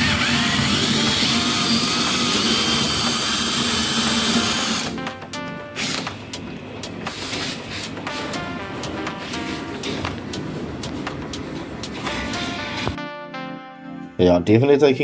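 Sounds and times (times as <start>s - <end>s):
power drill whining: 0.0s - 5.0s, 5.8s - 6.1s
background music: 0.4s - 15.0s.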